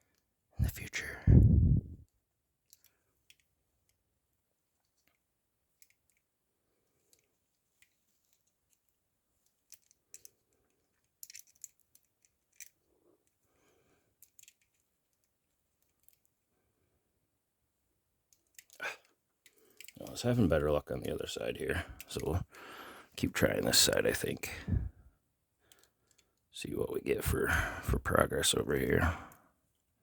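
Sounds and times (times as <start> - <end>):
paper clip clicking in handcuff lock: 11.0 - 12.8.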